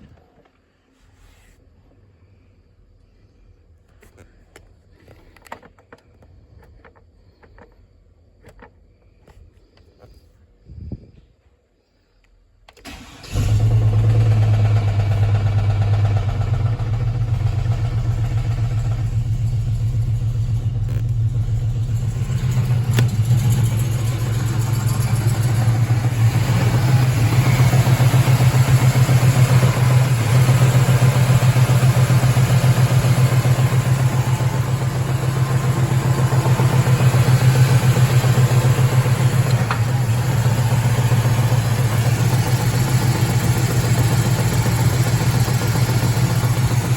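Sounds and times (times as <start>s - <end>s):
truck engine starting and idling: 12.7s - 46.9s.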